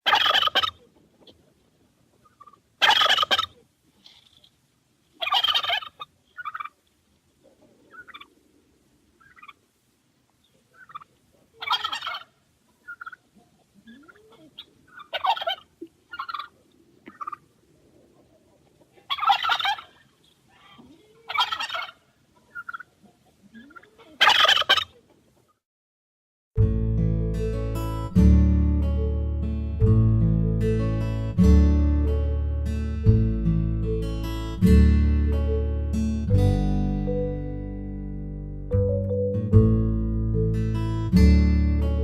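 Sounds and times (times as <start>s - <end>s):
turkey gobbling: 0.0s - 1.4s, 2.2s - 3.6s, 5.2s - 6.8s, 7.4s - 8.4s, 9.2s - 9.6s, 10.4s - 25.5s
quiet turkey calls: 0.0s - 1.5s, 2.1s - 4.5s, 5.2s - 25.6s.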